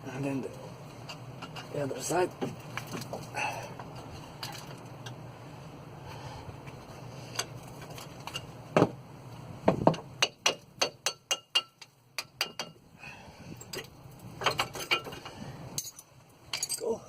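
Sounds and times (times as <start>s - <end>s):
metal tools knocking and clinking: 13.7s - 15.2s, 15.8s - 16.9s.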